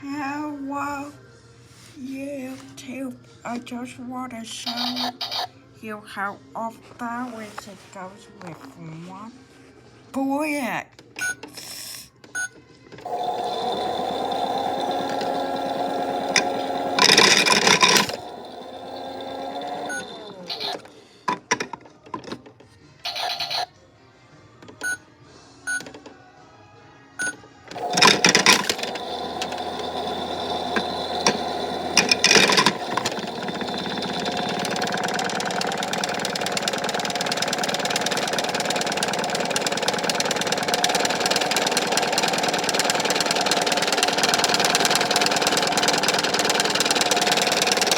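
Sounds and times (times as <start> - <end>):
toy washing machine motor whirring: 4.6 - 5.5, 11.2 - 21.7, 23.1 - 23.7, 27.2 - 47.9.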